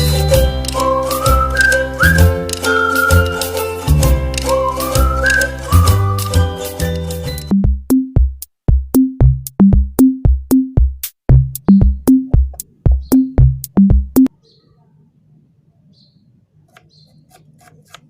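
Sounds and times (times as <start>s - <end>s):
drum machine beat: 7.4s - 14.3s
deep bass thump: 7.5s - 14.3s.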